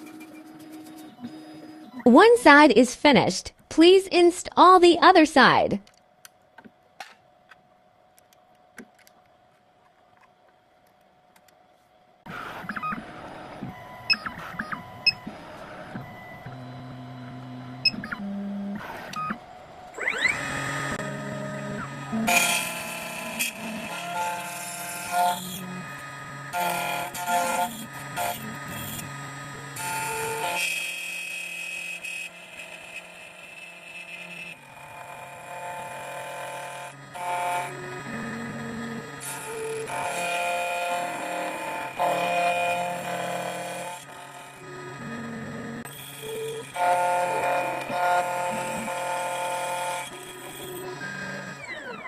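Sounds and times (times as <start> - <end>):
key cutting machine whine: 0.0 - 2.0, 12.4 - 52.0
motors humming: 12.3 - 52.0.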